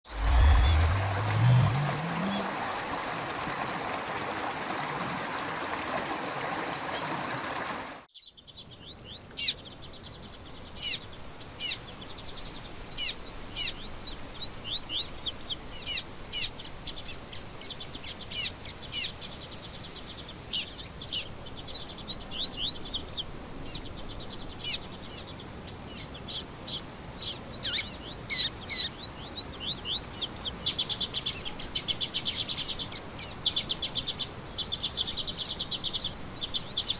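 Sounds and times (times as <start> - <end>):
steady rushing sound: 0.0 - 3.2
songbirds chirping: 0.0 - 36.9.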